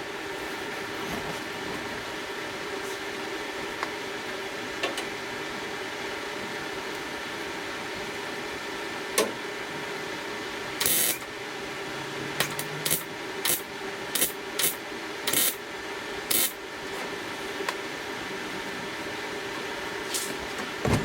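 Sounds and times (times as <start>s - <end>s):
steady shop hum: 0.0s - 21.0s
welding arc crackle: 10.8s - 11.2s, 12.4s - 15.6s, 16.3s - 16.6s.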